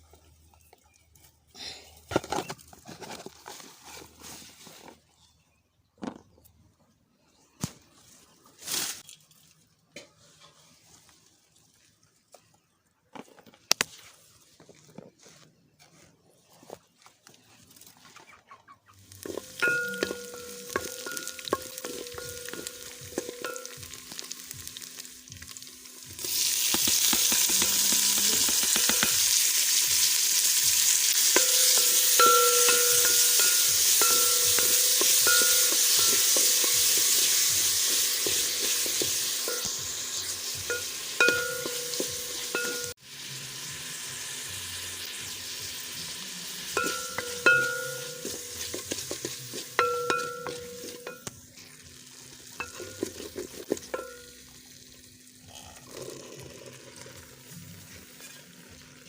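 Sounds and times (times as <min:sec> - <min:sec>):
food sizzling in hot oil: 0:19.0 - 0:59.0
utensil scraping a pot: 0:31.2 - 0:42.9, 0:46.8 - 0:51.3, 0:52.6 - 0:54.3.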